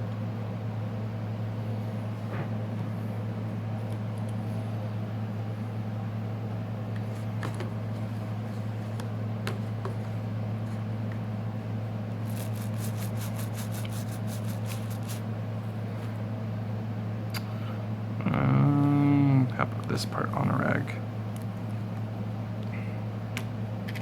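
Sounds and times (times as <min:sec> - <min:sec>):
low machine hum: 0:00.0 - 0:24.0
small brush scrubbing: 0:12.2 - 0:15.3.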